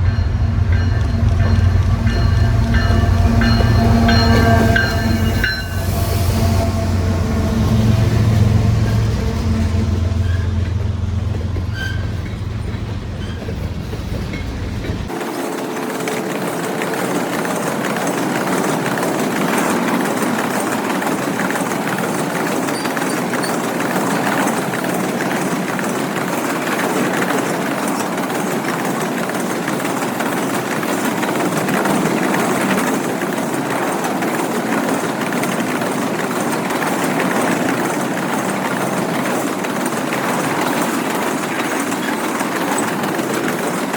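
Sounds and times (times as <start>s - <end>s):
low rumble: 0.0s - 15.1s
freight train cars rolling past: 0.0s - 43.9s
train wheels clicking on rail joints: 0.0s - 43.9s.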